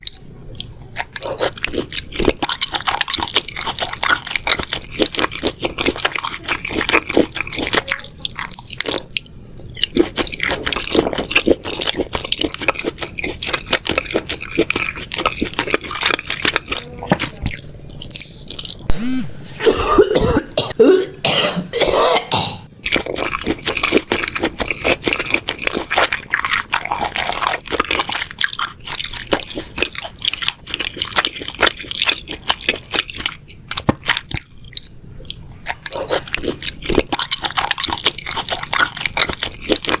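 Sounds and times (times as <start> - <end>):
person coughing and hacking: 18.9 - 22.7.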